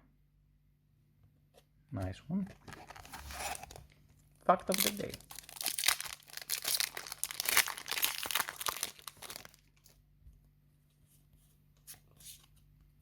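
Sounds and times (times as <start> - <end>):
foil wrapper tearing and crinkling: 2.7 - 4.0, 4.7 - 10.0.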